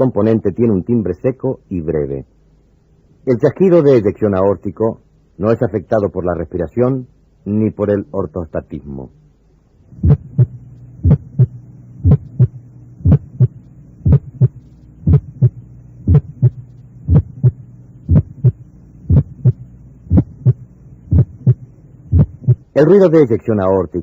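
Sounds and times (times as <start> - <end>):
steady low hum: 0.0 - 24.0
heartbeat thuds: 10.0 - 22.7.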